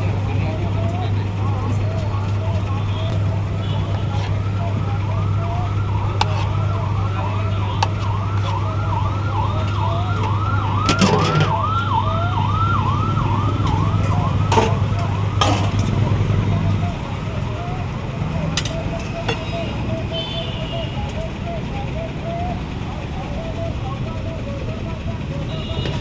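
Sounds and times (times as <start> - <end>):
electronic siren warbling: 2.9 - 25.9.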